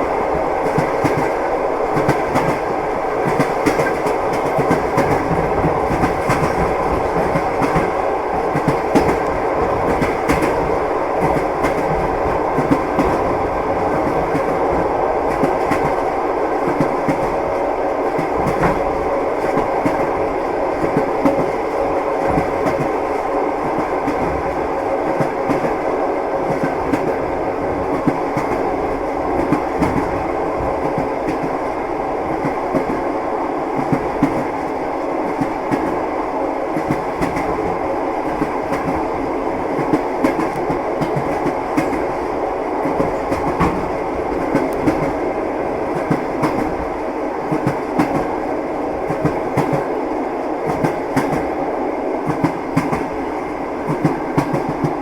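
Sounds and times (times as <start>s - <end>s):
train wheels clattering on rails: 0.0s - 33.1s, 33.7s - 36.0s, 36.7s - 51.6s, 52.2s - 55.0s.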